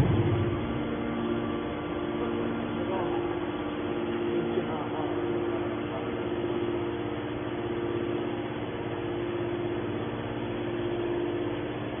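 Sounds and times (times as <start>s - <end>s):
hydraulic pump humming: 0.0s - 12.0s.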